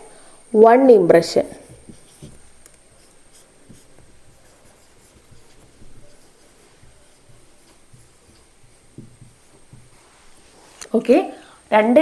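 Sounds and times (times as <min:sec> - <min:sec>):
pen writing in soft strokes: 0:01.6 - 0:10.5.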